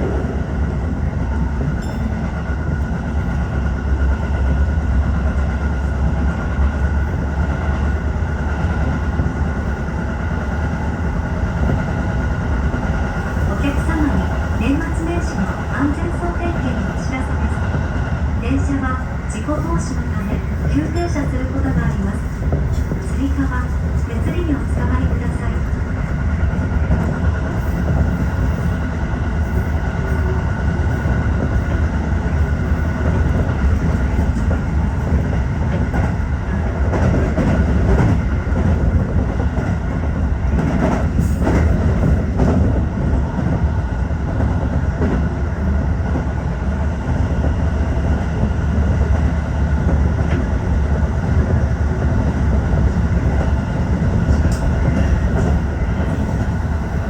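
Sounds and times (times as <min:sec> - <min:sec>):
train wheels rumbling on rails: 0:00.0 - 0:57.0
train wheel clacks: 0:29.4 - 0:43.6.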